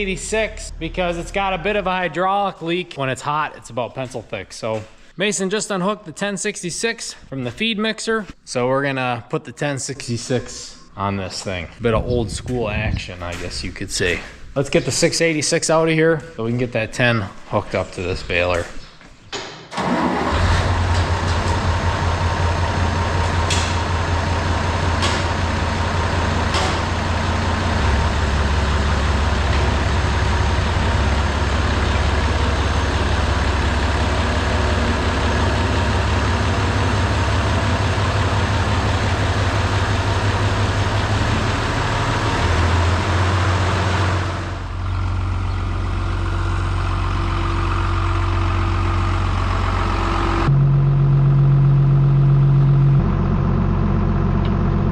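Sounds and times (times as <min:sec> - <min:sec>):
tractor engine running: 0:19.7 - 0:54.9.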